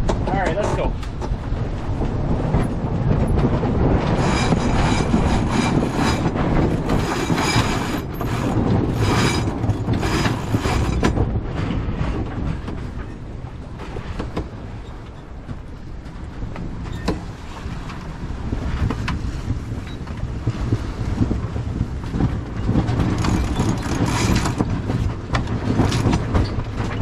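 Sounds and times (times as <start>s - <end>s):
wind rushing: 0.0s - 27.0s
water rushing: 3.7s - 11.1s
winch ratcheting and whirring: 4.1s - 11.2s, 22.8s - 26.6s.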